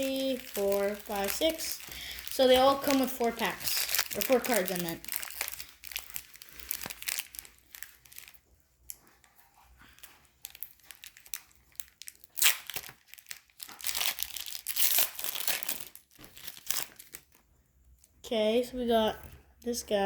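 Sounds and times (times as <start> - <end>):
card pack wrappers crinkling: 0.0 - 9.2, 9.8 - 17.4.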